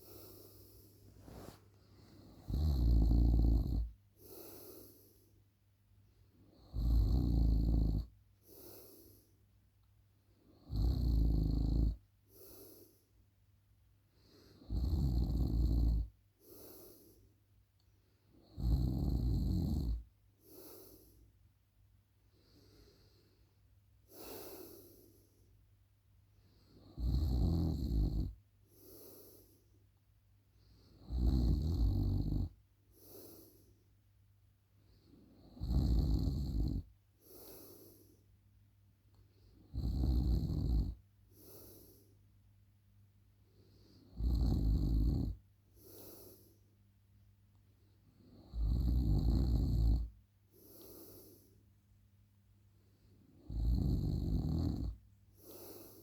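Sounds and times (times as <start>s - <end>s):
soft breathing: 0.0s - 2.6s, 4.1s - 5.5s, 8.4s - 9.5s, 12.3s - 13.2s, 16.4s - 18.4s, 20.4s - 21.4s, 22.2s - 25.6s, 28.6s - 31.0s, 32.8s - 34.0s, 37.2s - 38.4s, 41.2s - 42.3s, 45.7s - 46.8s, 50.0s - 51.8s, 54.7s - 56.0s
person snoring: 2.4s - 5.1s, 6.7s - 9.0s, 10.6s - 12.6s, 14.6s - 17.0s, 18.6s - 21.1s, 27.0s - 29.4s, 31.0s - 33.5s, 35.6s - 38.0s, 39.7s - 41.9s, 44.1s - 46.4s, 48.4s - 51.5s, 53.4s - 56.0s.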